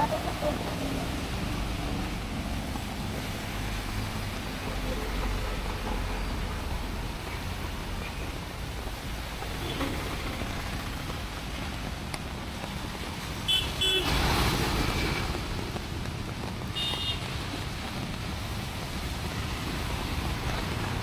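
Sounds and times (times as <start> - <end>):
rain hiss: 0.0 - 21.0
traffic noise: 0.0 - 21.0
high-pitched vehicle horn toots: 16.8 - 17.2.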